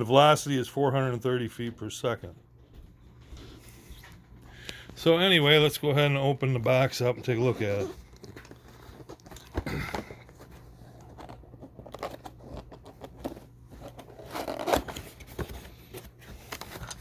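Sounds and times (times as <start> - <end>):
cardboard box packaging rustling: 5.0 - 17.0.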